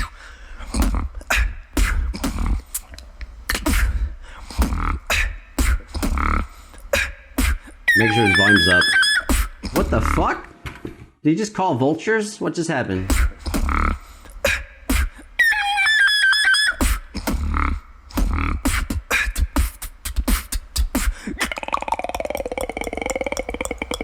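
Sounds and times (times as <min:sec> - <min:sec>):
beatboxing clicks and drum hits: 0:00.0 - 0:10.3, 0:13.0 - 0:15.3, 0:16.6 - 0:24.0
high warbling whistle: 0:07.9 - 0:09.6, 0:15.4 - 0:17.0.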